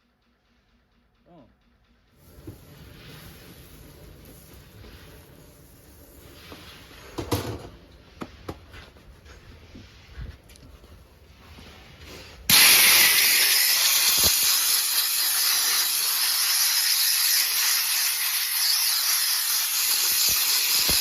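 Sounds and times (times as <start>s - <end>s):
air blow gun hissing: 12.5s - 21.0s.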